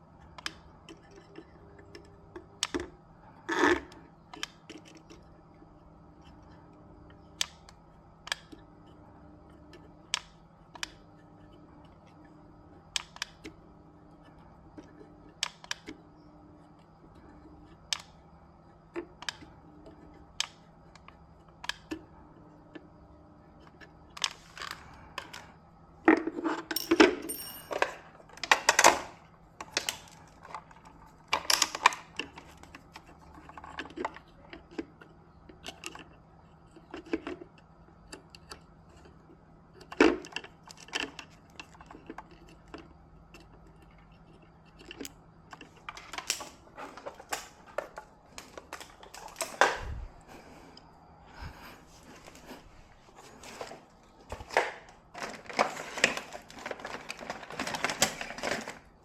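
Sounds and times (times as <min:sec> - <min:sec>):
faint steady hum: 0:00.0 - 0:59.0
parts clattering and rustling: 0:24.1 - 0:34.2, 0:39.9 - 0:58.9
tools clicking and tapping: 0:26.7 - 0:28.0.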